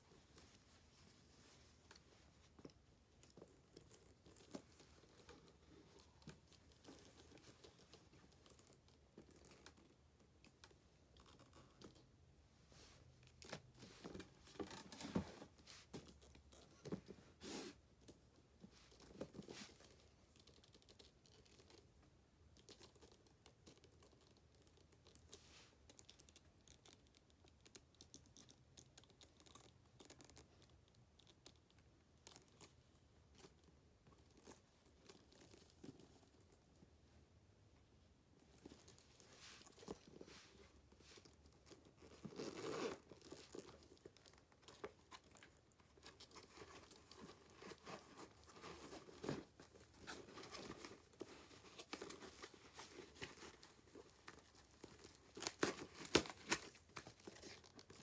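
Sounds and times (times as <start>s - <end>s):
packaging rustling and crinkling: 38.5s - 58.0s.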